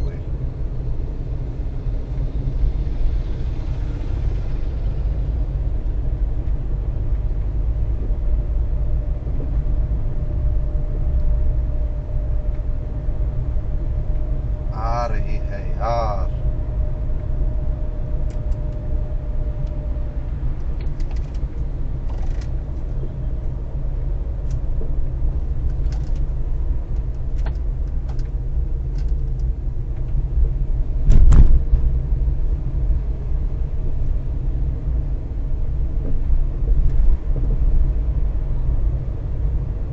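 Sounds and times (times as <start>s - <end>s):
car road and engine rumble: 0.0s - 39.9s
loud thud: 31.1s - 31.7s.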